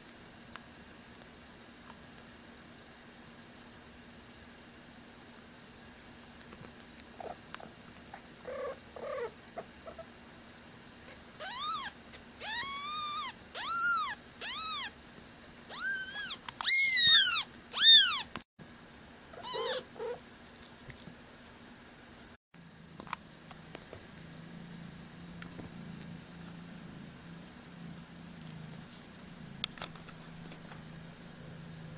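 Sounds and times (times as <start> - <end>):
kittens mewing: 15.7 - 18.4.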